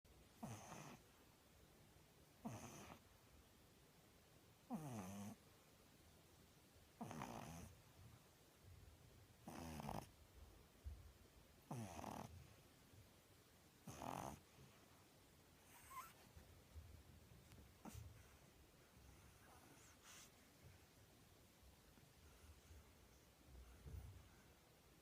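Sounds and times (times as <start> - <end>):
puppy snoring: 0.3 - 1.2, 2.4 - 3.1, 4.6 - 5.4, 7.0 - 7.9, 9.4 - 10.2, 11.6 - 12.6, 13.8 - 14.8, 15.6 - 16.3, 17.8 - 20.4.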